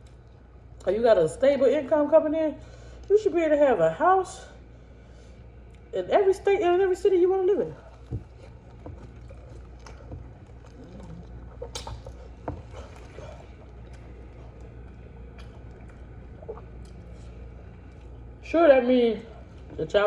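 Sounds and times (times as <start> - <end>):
chewing with small smacks: 0.0 - 1.0, 5.6 - 5.9, 7.6 - 18.4
steady low hum: 0.0 - 20.0.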